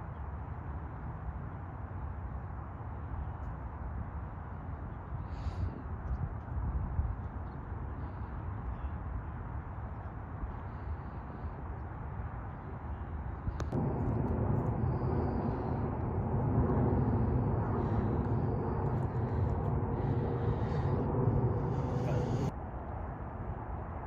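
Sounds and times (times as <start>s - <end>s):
low outdoor rumble: 12.5s - 24.0s
microphone noise: 13.6s - 22.5s.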